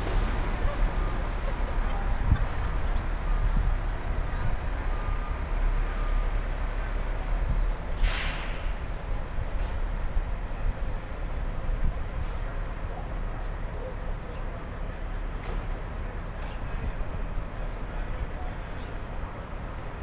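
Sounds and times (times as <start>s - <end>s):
street traffic rumble: 0.0s - 20.0s
short sharp hiss: 8.0s - 8.7s.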